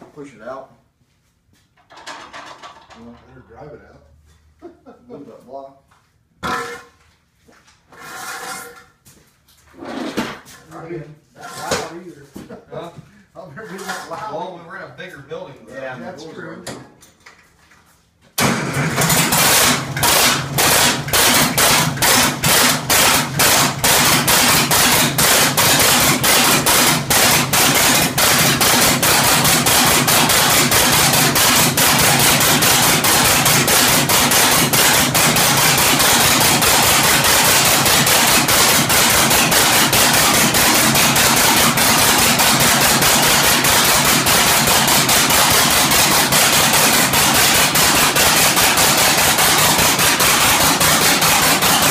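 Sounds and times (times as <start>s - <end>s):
diesel engine starting and running: 18.4s - 51.9s.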